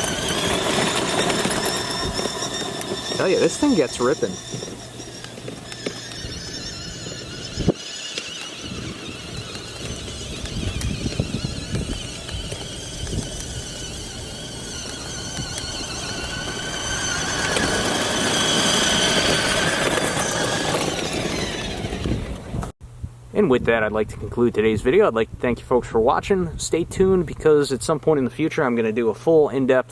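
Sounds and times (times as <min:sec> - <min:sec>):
electric motor whine: 0:00.0 - 0:22.7
wheels rumbling and knocking: 0:00.0 - 0:22.7.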